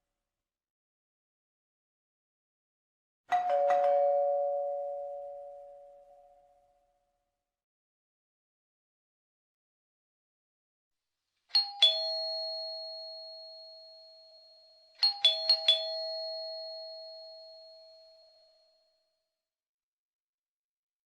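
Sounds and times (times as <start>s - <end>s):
ding-dong doorbell chime: 3.3s - 6.9s, 11.5s - 19.2s.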